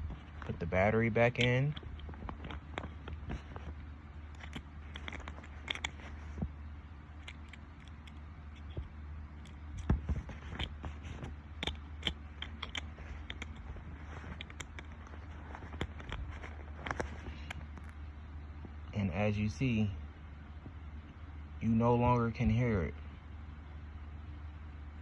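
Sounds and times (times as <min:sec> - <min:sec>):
small clicks and scrapes: 0:00.0 - 0:18.0
low steady hum: 0:00.0 - 0:25.0.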